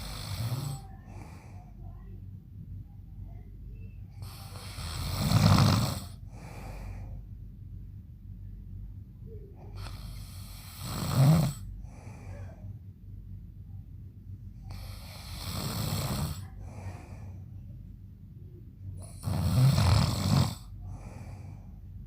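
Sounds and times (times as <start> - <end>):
man snoring loudly: 0.0 - 0.8, 4.2 - 6.2, 9.8 - 11.6, 14.7 - 16.4, 19.0 - 20.7
faint breath: 0.0 - 2.2, 6.0 - 7.4, 11.5 - 12.9, 14.6 - 17.8, 20.6 - 22.0.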